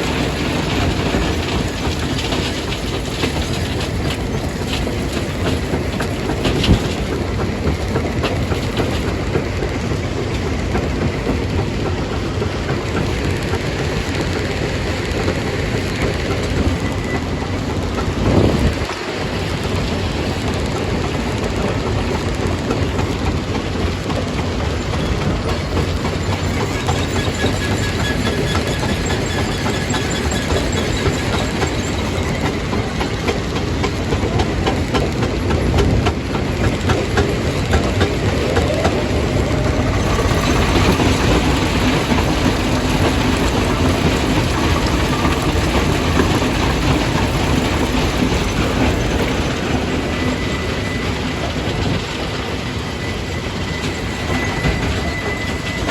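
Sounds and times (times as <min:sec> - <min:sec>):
machinery running: 0:00.0 - 0:55.9.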